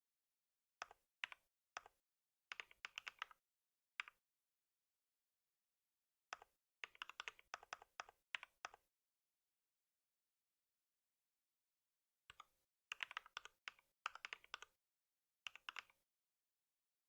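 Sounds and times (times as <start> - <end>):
typing on computer keyboard: 2.5 - 3.4, 6.4 - 8.8, 12.3 - 14.7, 15.5 - 16.0.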